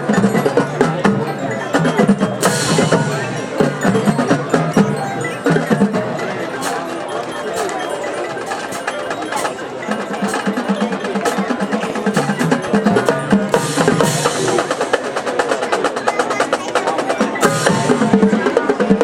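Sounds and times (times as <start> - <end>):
rapid snare drum strokes: 0.0 - 19.0
marching band horns: 8.4 - 15.4.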